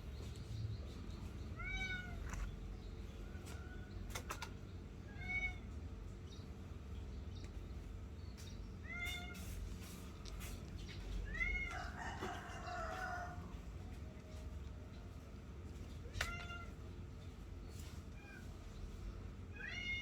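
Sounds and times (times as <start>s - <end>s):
cat meowing: 1.6s - 2.3s, 5.1s - 5.6s, 11.2s - 12.0s, 16.0s - 16.8s, 19.5s - 20.0s.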